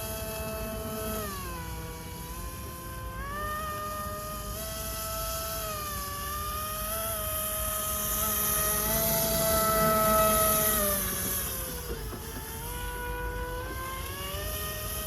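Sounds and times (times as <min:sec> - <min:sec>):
electric motor propeller whine: 0:00.0 - 0:15.0.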